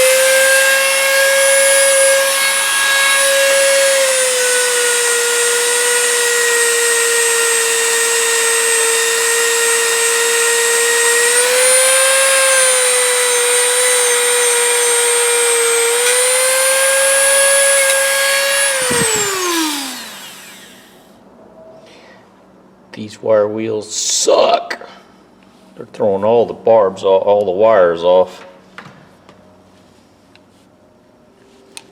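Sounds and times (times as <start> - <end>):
electric wire wheel whining: 0.0 - 21.0.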